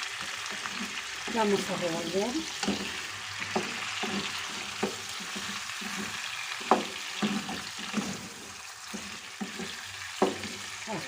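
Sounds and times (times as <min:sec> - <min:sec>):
chicken and garlic sizzling in oil: 0:00.0 - 0:11.0
utensil scraping and knocking pan: 0:00.2 - 0:10.8.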